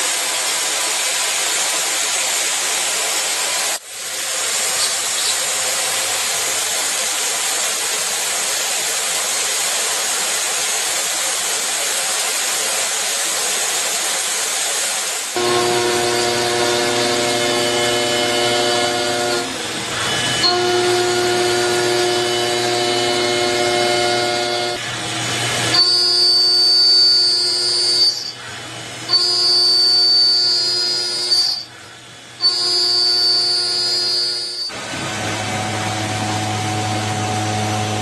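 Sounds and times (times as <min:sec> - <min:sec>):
high machine whine: 0:00.0 - 0:38.0
machine tools whining: 0:15.2 - 0:38.0.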